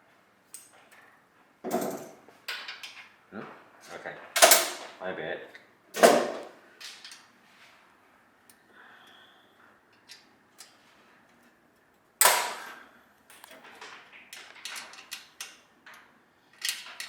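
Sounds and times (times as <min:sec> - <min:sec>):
allen key clicking on metal parts: 0:04.4 - 0:04.8, 0:12.2 - 0:17.0.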